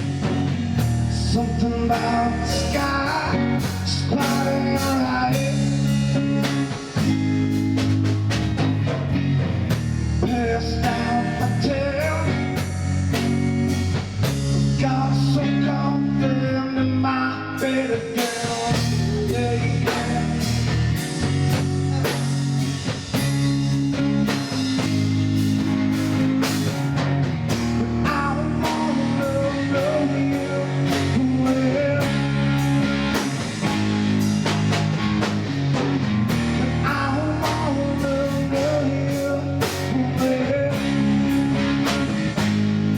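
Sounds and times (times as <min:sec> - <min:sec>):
drum kit: 0:00.0 - 0:16.8, 0:17.5 - 0:42.9
bass guitar: 0:00.0 - 0:42.9
blues-rock music: 0:00.0 - 0:42.9
electric guitar: 0:00.0 - 0:42.9.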